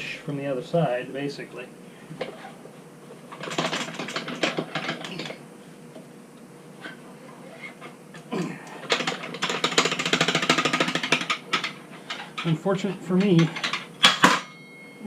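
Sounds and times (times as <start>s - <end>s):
metallic clicking and rattling: 8.8s - 14.5s.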